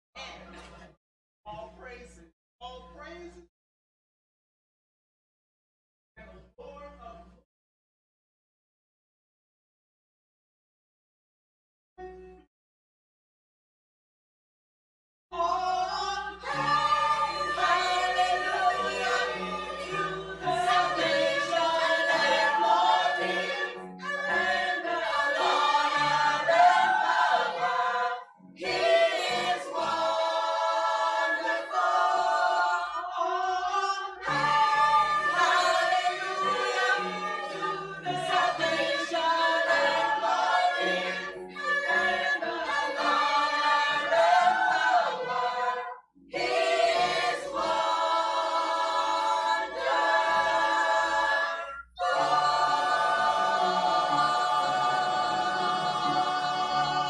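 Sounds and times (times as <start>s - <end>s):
choir singing in harmony: 15.4s - 57.0s.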